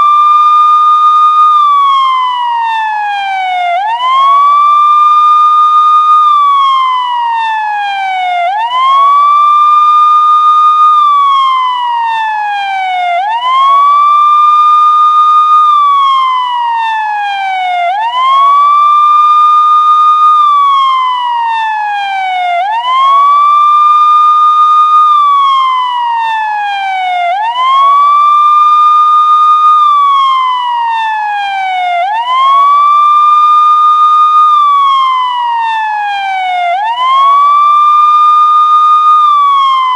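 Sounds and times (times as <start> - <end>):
police siren wailing: 0.0 - 39.9.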